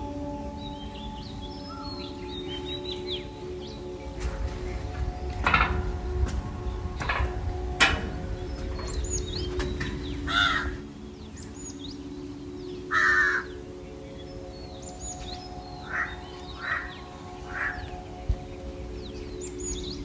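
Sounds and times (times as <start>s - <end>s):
small birds chirping: 0.6s - 20.0s
crows cawing: 10.0s - 10.9s, 12.9s - 13.5s, 15.8s - 17.9s.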